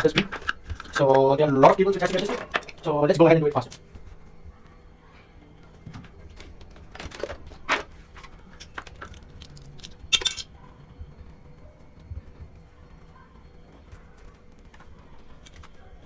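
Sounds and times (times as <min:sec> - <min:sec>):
computer cables rattling: 0:00.0 - 0:03.9, 0:05.7 - 0:10.6, 0:13.9 - 0:16.0.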